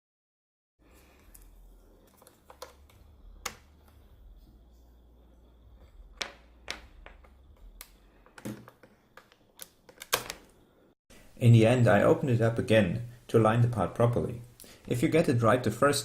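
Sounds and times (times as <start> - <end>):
low steady hum: 0.8 - 8.4.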